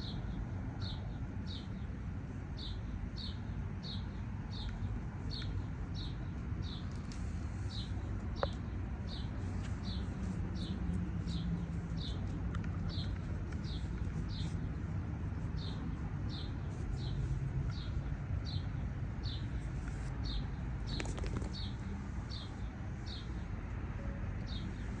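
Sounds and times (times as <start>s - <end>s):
bird chirping: 7.6s - 14.7s, 15.5s - 19.6s.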